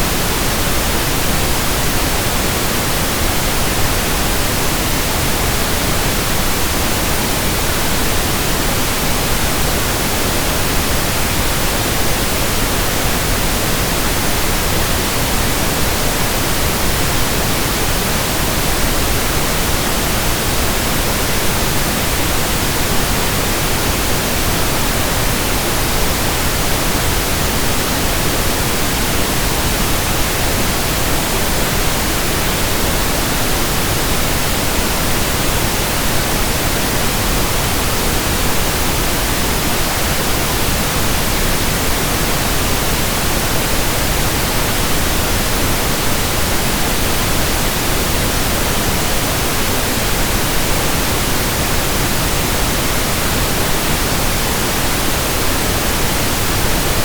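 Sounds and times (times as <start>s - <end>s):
steady pink noise hiss: 0.0s - 57.0s.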